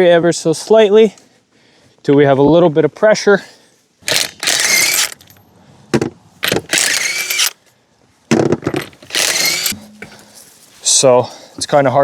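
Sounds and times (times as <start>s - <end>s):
metal hand tools clicking and rattling: 8.7s - 10.2s.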